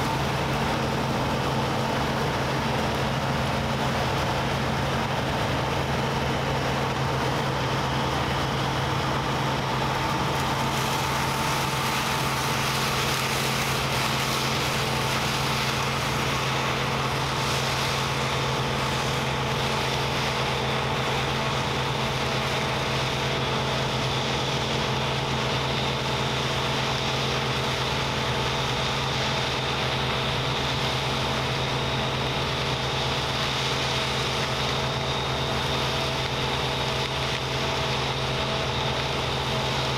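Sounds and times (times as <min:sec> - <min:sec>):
combine harvester droning: 0:00.0 - 0:39.9.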